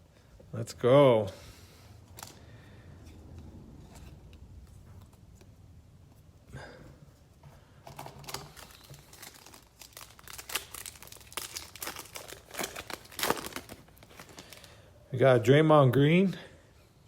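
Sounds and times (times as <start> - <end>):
wrapper rustling: 7.8 - 14.9.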